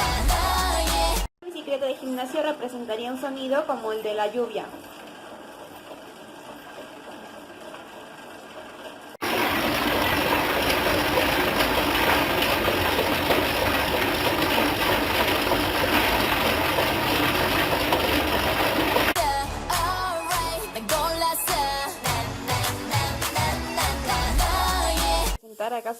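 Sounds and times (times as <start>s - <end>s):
exercise bike whirring hiss: 2.4s - 19.2s.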